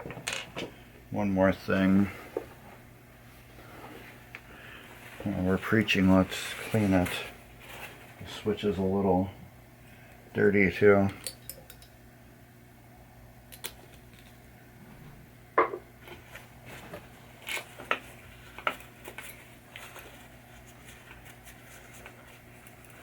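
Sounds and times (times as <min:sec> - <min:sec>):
steady low hum: 0:00.0 - 0:23.0
small parts and tools clicking: 0:11.1 - 0:12.0, 0:13.5 - 0:14.4.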